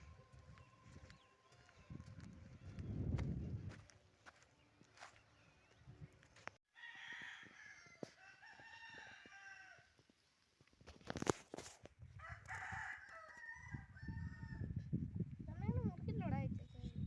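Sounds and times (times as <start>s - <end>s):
rooster crowing: 6.7s - 10.0s, 12.2s - 14.7s.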